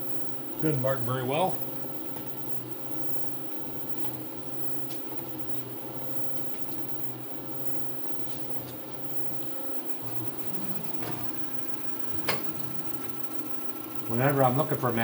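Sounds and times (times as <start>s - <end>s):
milling machine hum: 0.0s - 15.0s
low tone switching on and off: 10.0s - 14.0s.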